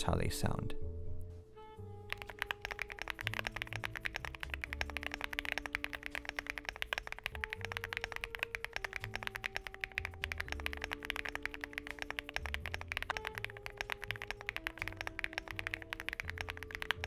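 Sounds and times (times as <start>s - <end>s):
fast typing on mechanical keyboard: 2.1s - 17.0s.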